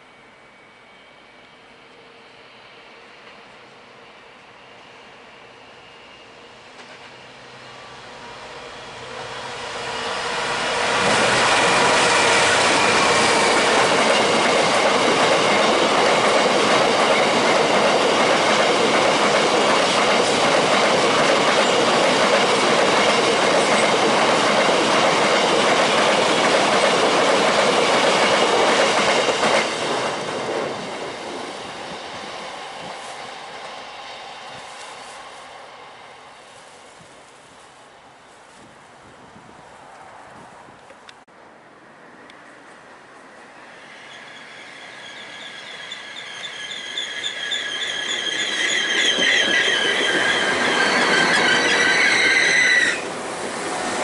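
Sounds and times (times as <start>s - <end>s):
wheels squealing on rail: 0.0s - 26.2s, 43.3s - 54.0s
train passing on rails: 0.0s - 54.0s.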